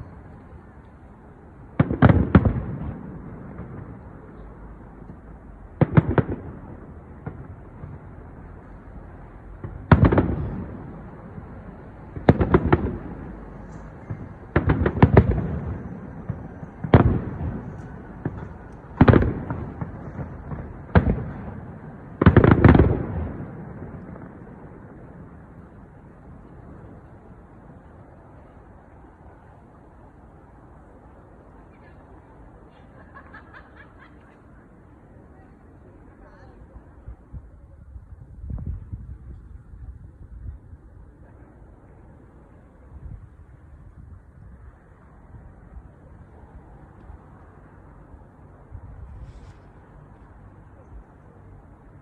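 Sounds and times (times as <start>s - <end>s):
fireworks bursting: 0.0s - 28.5s.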